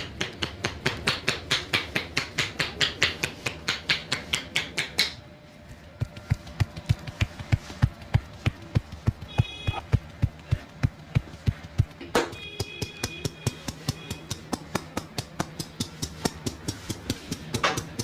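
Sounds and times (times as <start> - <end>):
hands slapping the body: 6.0 - 18.0.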